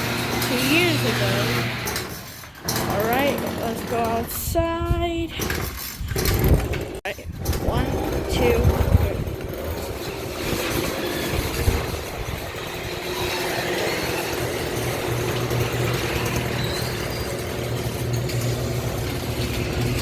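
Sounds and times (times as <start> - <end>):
garage door opener motor humming: 0.0 - 4.6, 5.3 - 20.0
door rattling along track: 0.0 - 20.0.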